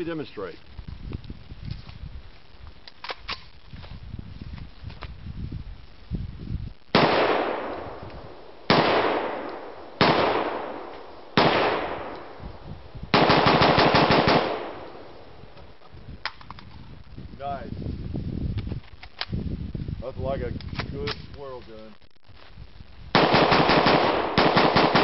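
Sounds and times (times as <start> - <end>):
echoing single gunshots: 6.9 - 12.4, 13.1 - 15.2, 23.2 - 25.0
rapid automatic gunfire: 13.1 - 14.8, 23.2 - 25.0.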